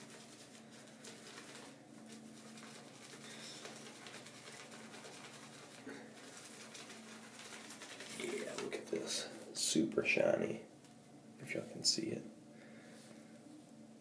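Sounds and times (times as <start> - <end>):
brush swirling wet lather: 0.0 - 10.2.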